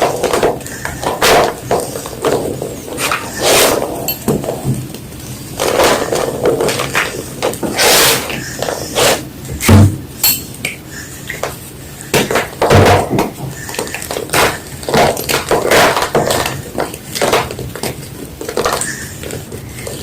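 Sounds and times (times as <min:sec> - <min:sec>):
dull thumps: 0:12.2 - 0:18.8.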